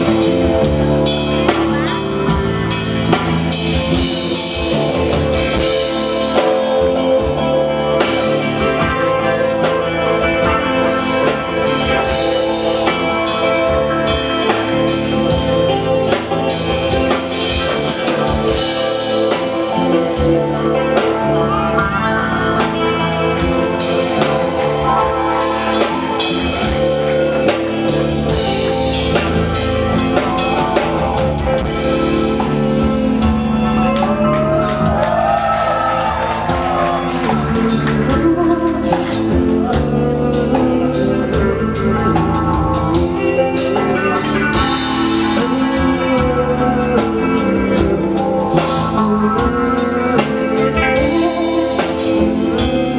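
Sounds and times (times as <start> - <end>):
drum kit: 0.0 - 52.9
electric guitars: 0.0 - 52.9.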